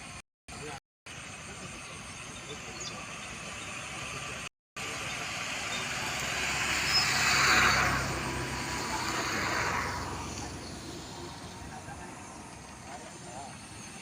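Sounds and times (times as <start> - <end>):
vehicle passing by: 3.0 - 14.0.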